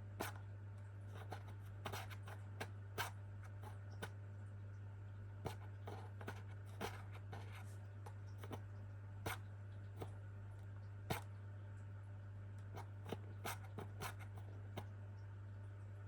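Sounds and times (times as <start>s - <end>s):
steady low hum: 0.0s - 16.0s
pet clicking and scratching: 1.1s - 4.1s, 5.4s - 10.2s, 12.6s - 14.9s.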